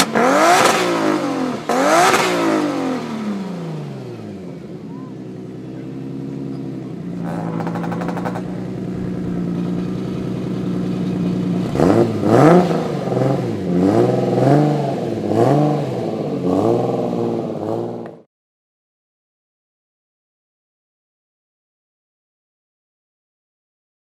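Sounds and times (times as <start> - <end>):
car engine idling and revving: 0.0 - 18.3
rapid engine clatter: 5.2 - 13.3.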